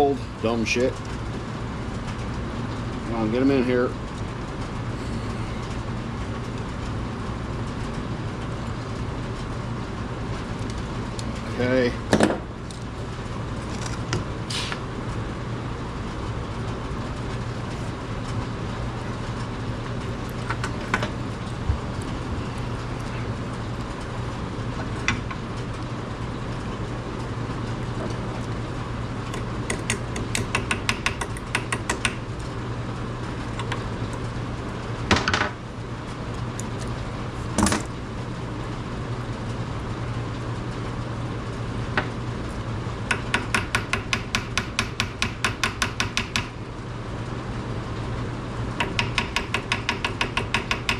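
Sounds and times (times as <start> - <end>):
low hum and rush: 0.0 - 50.9.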